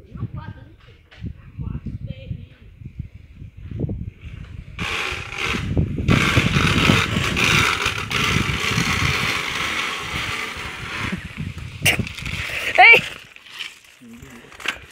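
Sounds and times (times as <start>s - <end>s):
loud vehicle engine: 4.8s - 11.3s.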